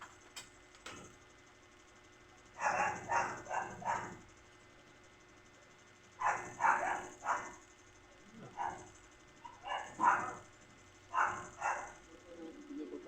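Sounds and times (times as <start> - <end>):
dog barking: 2.6 - 4.2, 6.2 - 7.6, 8.4 - 10.5, 11.1 - 12.1.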